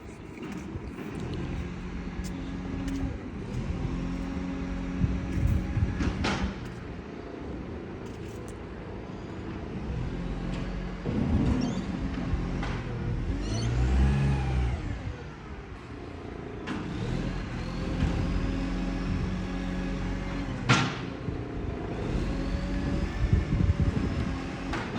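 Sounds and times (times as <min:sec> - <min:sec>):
engine with exhaust leak: 0:00.0 - 0:07.0
engine revving: 0:00.4 - 0:06.8, 0:09.9 - 0:15.4, 0:16.6 - 0:20.8, 0:21.8 - 0:24.9
short engine knocks: 0:05.4 - 0:06.7.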